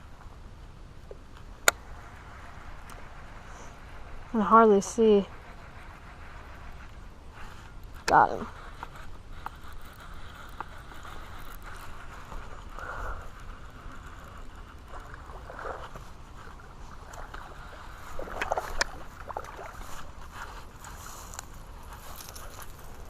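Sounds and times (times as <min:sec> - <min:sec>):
steady outdoor hiss: 0:00.0 - 0:23.0
fish splashing in water: 0:14.7 - 0:20.2.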